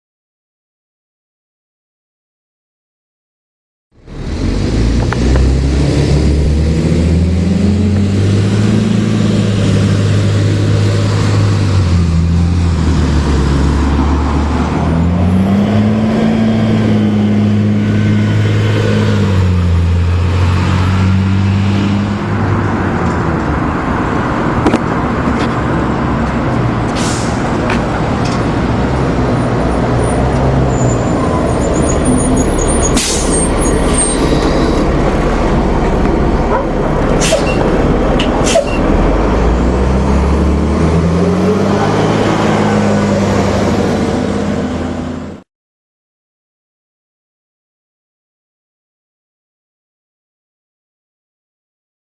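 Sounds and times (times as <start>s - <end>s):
bus diesel engine accelerating: 4.0s - 45.4s.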